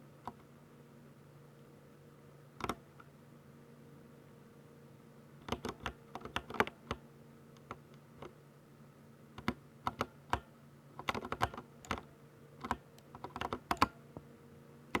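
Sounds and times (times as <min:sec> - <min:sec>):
mechanical keyboard typing: 0:05.4 - 0:07.0, 0:09.4 - 0:14.0.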